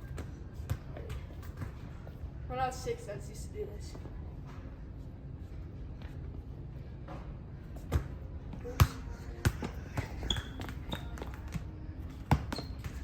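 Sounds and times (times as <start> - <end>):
ball bouncing on hard floor: 12.2 - 13.0.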